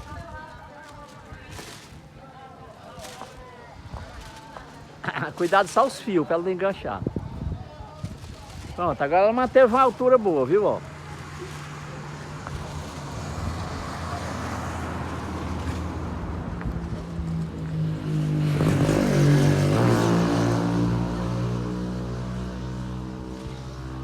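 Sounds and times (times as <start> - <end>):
vehicle passing by: 8.2 - 24.0.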